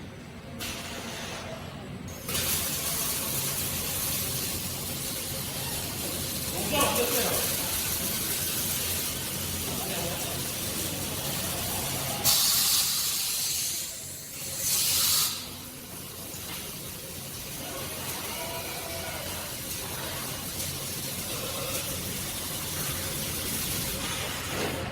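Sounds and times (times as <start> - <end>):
factory machinery noise: 0.0 - 24.9
loud hissing bursts: 2.3 - 24.5.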